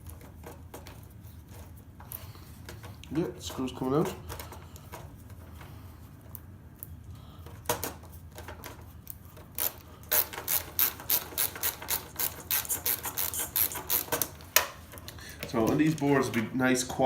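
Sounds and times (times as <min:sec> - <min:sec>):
ratcheting screwdriver clicking: 0:09.6 - 0:14.3.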